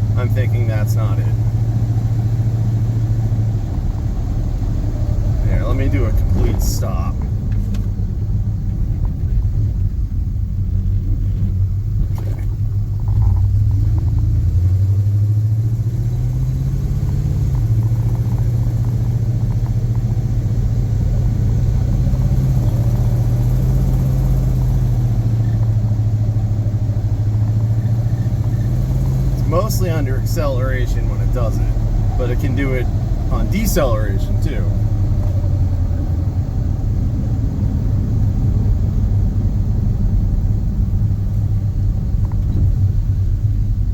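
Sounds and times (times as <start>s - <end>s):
pickup truck engine running: 0.0s - 43.9s.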